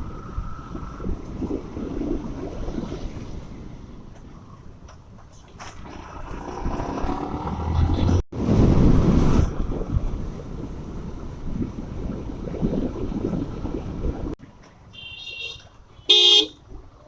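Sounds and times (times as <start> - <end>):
wind buffeting microphone: 0.0 - 14.4
motorcycle engine rumble: 3.8 - 17.0.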